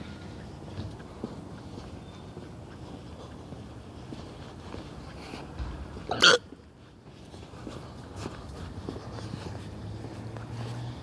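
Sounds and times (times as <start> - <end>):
footsteps walking: 0.1 - 11.0.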